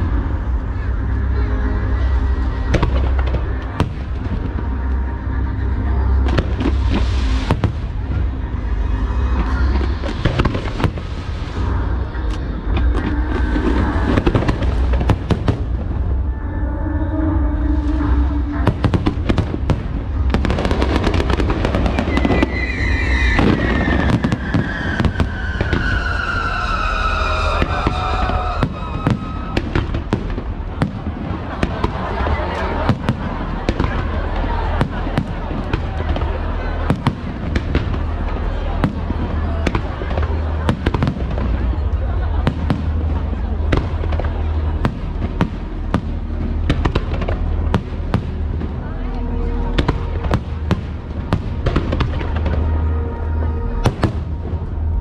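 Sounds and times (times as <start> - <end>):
fireworks rumbling bursts: 0.0 - 55.0
music playing: 0.0 - 55.0.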